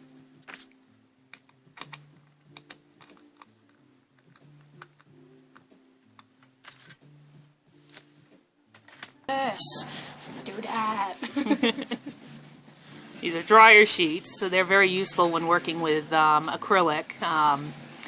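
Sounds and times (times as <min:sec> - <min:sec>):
quiet background music: 0:00.0 - 0:18.0
clicks and taps of small parts: 0:01.3 - 0:06.8.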